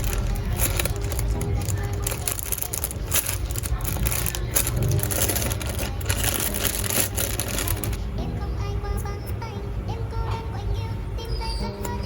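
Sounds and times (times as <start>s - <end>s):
packaging crumpling: 0.0s - 8.0s.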